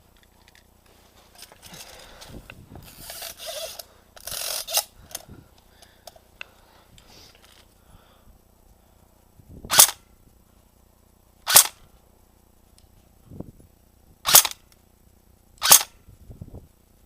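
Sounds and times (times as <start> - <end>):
airsoft gun shots: 9.7 - 10.1, 11.4 - 11.8, 14.2 - 14.6, 15.6 - 16.0.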